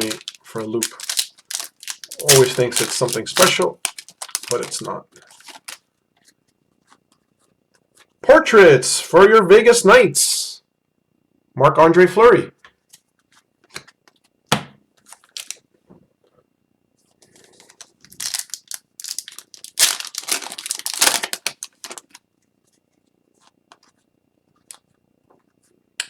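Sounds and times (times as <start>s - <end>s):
card pack wrapper crinkling: 0.0s - 5.8s, 15.0s - 15.6s, 17.3s - 22.2s.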